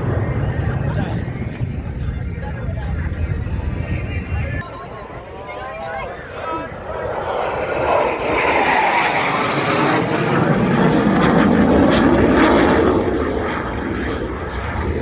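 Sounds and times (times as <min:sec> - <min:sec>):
airplane flying past: 0:06.1 - 0:15.0.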